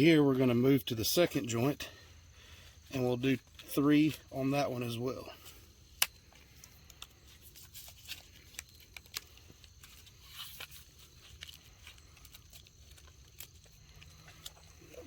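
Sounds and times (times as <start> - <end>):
rope rustling on wooden sticks: 2.4 - 15.0.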